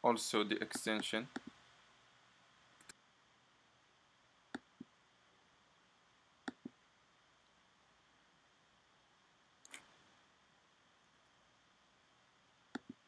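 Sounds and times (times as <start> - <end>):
computer mouse clicking: 0.7 - 1.6, 6.4 - 6.8, 9.6 - 10.0, 12.7 - 13.0.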